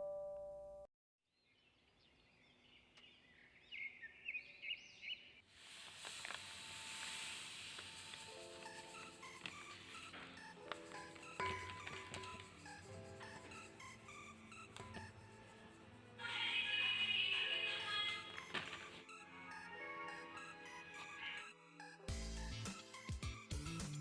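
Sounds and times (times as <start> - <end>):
birds chirping: 1.4 - 5.5
steady hiss: 5.5 - 16.0
bright repeating background music: 8.3 - 16.7, 17.3 - 24.0.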